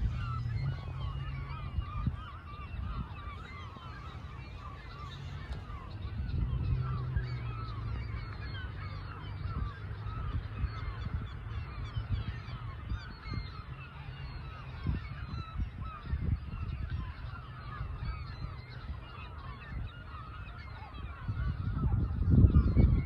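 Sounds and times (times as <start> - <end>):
low rumble: 0.0 - 11.0
flock of birds calling: 0.0 - 23.0.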